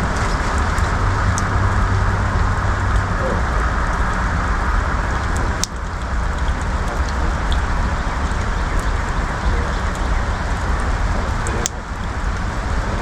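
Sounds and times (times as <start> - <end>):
sharp ticks: 5.2 - 12.5.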